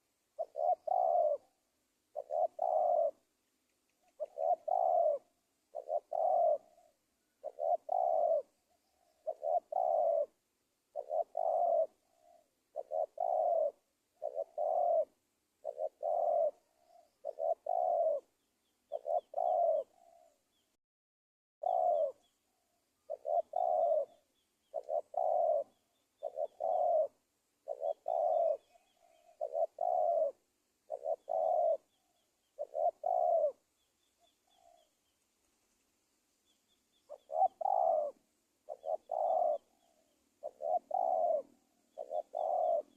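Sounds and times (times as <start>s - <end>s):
dove cooing: 0.0s - 3.3s, 3.9s - 20.6s, 21.6s - 35.1s, 36.4s - 42.9s
small bird chirping: 0.0s - 20.8s, 21.6s - 42.9s.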